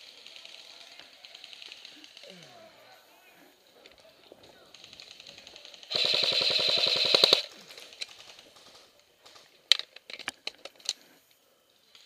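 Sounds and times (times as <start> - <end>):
sharp irregular cracks: 0.0 - 2.5, 3.8 - 11.1
airsoft gun full-auto burst: 4.7 - 8.5.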